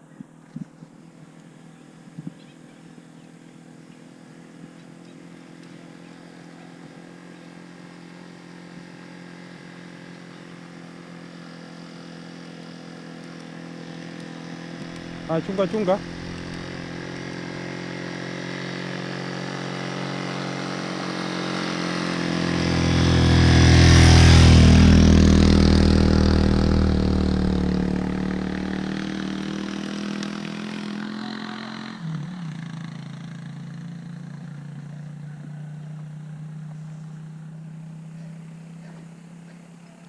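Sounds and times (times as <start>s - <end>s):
engine running: 0.6s - 39.9s
vehicle passing by: 14.7s - 18.7s, 21.0s - 39.0s.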